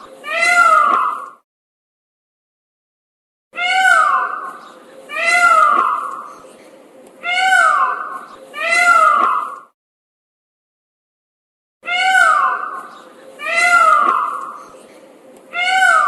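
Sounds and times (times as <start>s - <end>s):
cat meowing: 3.6s - 4.3s, 11.8s - 12.7s, 15.5s - 16.0s.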